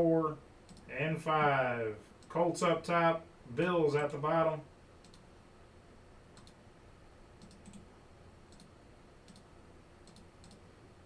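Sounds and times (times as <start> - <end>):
low room hum: 0.0 - 11.0
faint computer clicks: 0.7 - 0.9, 5.0 - 5.3, 6.3 - 6.6, 7.4 - 7.9, 8.5 - 10.7.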